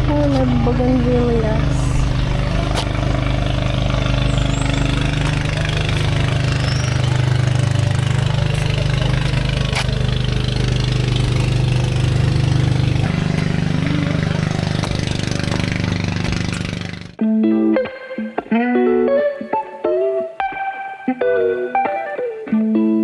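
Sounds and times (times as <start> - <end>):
small engine idling: 0.0 - 17.2.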